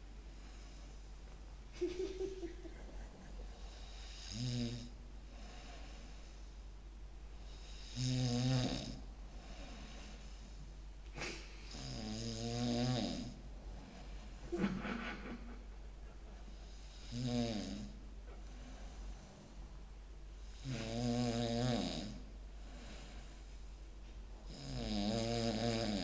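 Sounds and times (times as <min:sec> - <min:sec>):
pet snoring: 0:03.6 - 0:06.0, 0:07.5 - 0:10.6, 0:11.7 - 0:14.1, 0:16.4 - 0:18.0, 0:20.4 - 0:22.2, 0:24.5 - 0:26.0
sharp sniff: 0:11.2 - 0:11.7.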